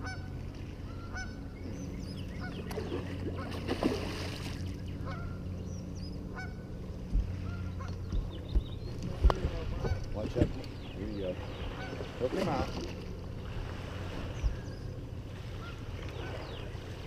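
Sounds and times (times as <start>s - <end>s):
geese honking: 0.0s - 1.4s, 2.4s - 3.6s, 5.0s - 5.5s, 6.3s - 6.7s, 9.7s - 10.2s, 11.5s - 12.2s, 15.5s - 16.6s
steady low hum: 0.0s - 17.0s.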